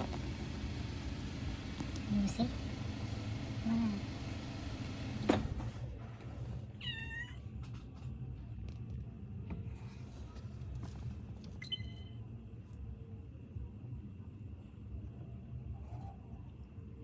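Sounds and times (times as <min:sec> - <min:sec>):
low steady hum: 0:00.0 - 0:06.8, 0:07.4 - 0:17.0
cat meowing: 0:06.8 - 0:07.4.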